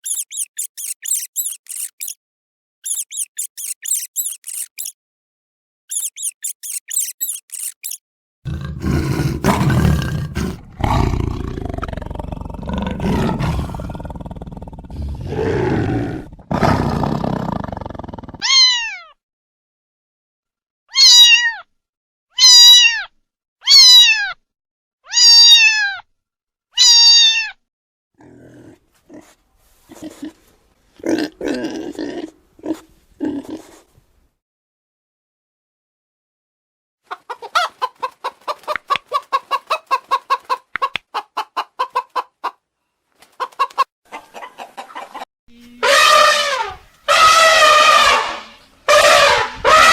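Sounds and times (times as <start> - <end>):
high animal squeaks: 0.0 - 2.2, 2.8 - 5.0, 5.9 - 8.0.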